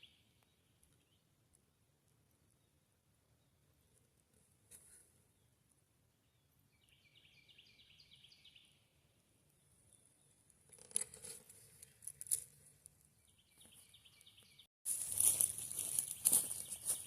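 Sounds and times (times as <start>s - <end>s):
bird chirping: 0.0s - 1.9s, 6.2s - 10.5s, 13.2s - 14.7s, 15.3s - 17.0s.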